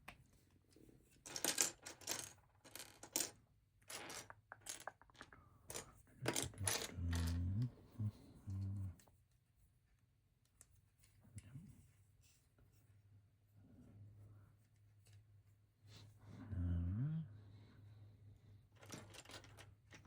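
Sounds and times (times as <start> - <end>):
plastic bricks clattering: 1.3 - 7.4, 18.8 - 20.0.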